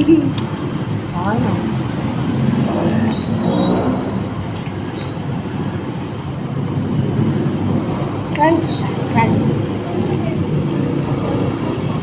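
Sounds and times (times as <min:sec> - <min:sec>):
vehicle rumble: 0:00.0 - 0:12.0.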